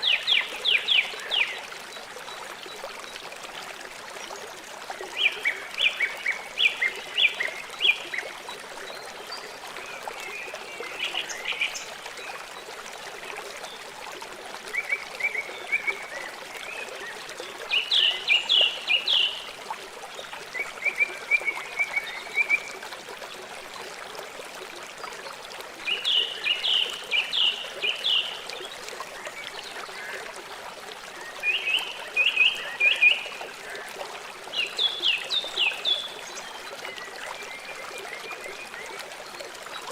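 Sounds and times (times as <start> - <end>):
river water running: 0.0 - 39.9.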